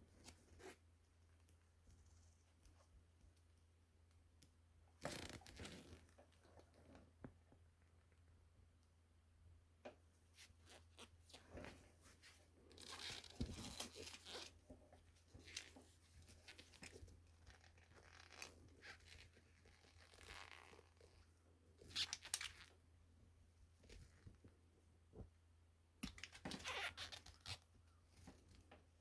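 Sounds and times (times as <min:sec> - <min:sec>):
rustling: 0:10.4 - 0:22.7.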